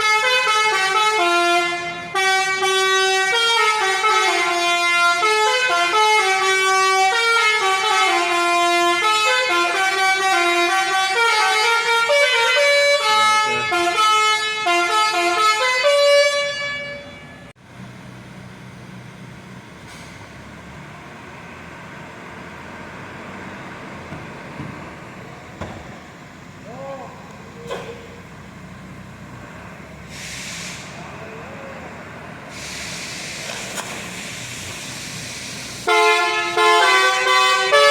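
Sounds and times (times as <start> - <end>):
bus horn playing a melody: 0.0 - 17.6, 35.8 - 37.9
low engine hum: 17.1 - 35.9.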